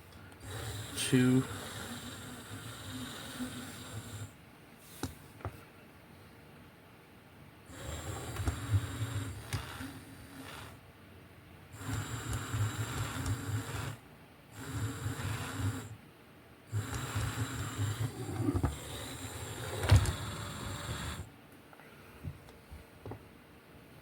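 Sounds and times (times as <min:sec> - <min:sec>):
toy car electric motors whirring: 0:00.4 - 0:04.3, 0:07.7 - 0:10.8, 0:11.8 - 0:14.0, 0:14.6 - 0:16.0, 0:16.7 - 0:21.3.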